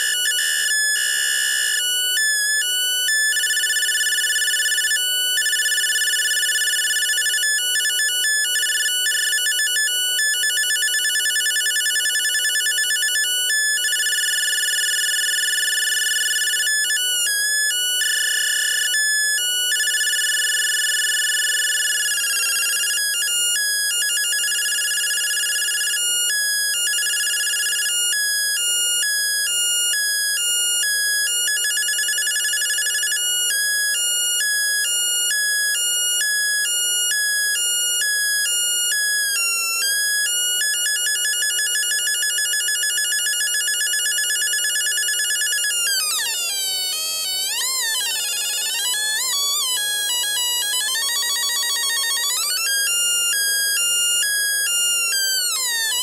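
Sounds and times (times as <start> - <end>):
buzzy electronic siren tone: 45.2 - 56.0.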